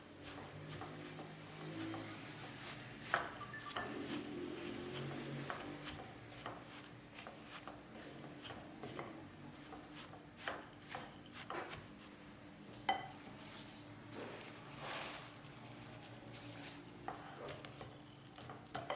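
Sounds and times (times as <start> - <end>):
utensil scraping a bowl: 0.2 - 11.9.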